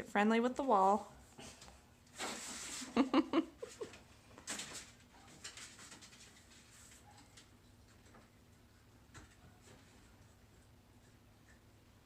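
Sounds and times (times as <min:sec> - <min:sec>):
mirror scraping on wall: 0:02.1 - 0:03.0.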